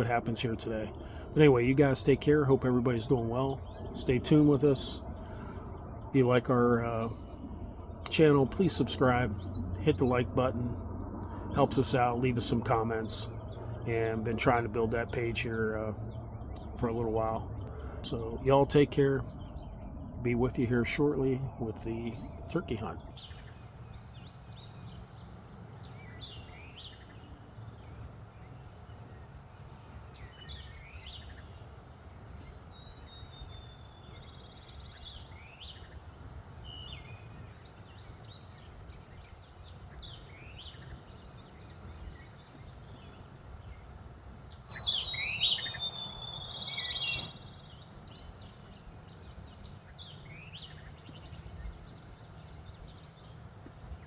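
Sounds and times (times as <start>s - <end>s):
songbirds chirping and singing: 0.0s - 54.0s
steady low rumble: 0.0s - 54.0s.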